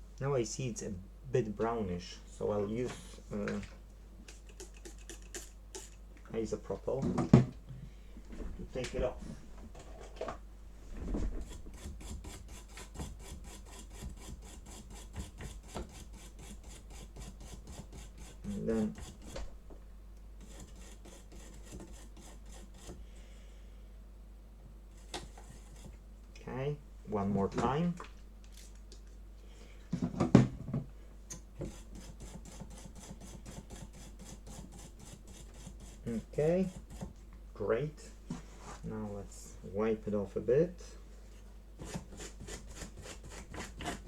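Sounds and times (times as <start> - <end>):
scrubbing strokes on circuit board: 4.3 - 6.0, 11.4 - 19.5, 20.4 - 23.0, 24.9 - 26.0, 31.6 - 37.1, 41.8 - 44.0.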